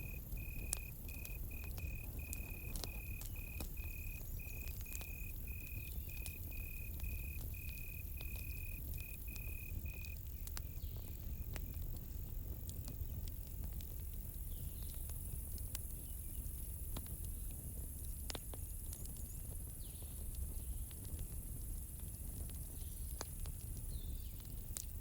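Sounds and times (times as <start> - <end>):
cricket chirping: 0.0 - 11.8
campfire crackling and popping: 0.0 - 25.0.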